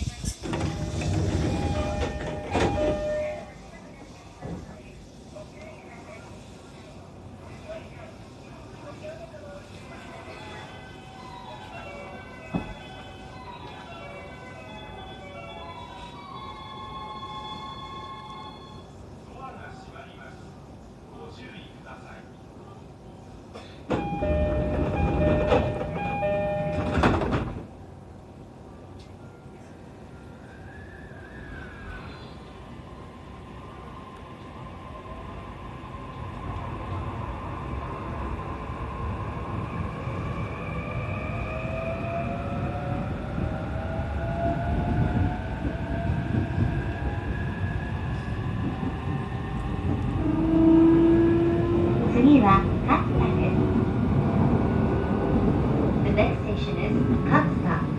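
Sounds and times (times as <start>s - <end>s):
train rushing past: 0.0s - 4.9s, 23.8s - 27.9s, 30.2s - 57.9s.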